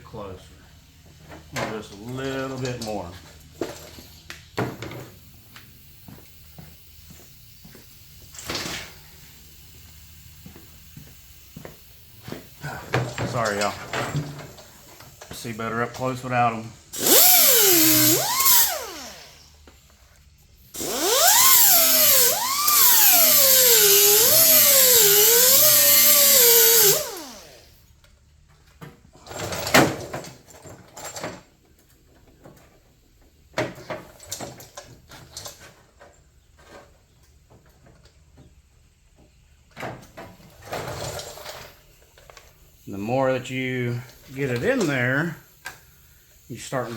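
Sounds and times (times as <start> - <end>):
power grinder on metal: 17.0 - 19.4, 20.8 - 27.7.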